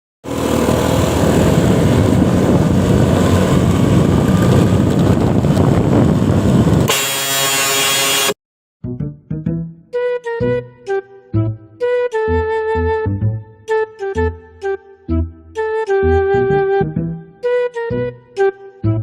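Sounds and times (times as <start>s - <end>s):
loud vehicle noise: 0.2s - 8.4s
truck air horn blaring: 6.9s - 8.4s.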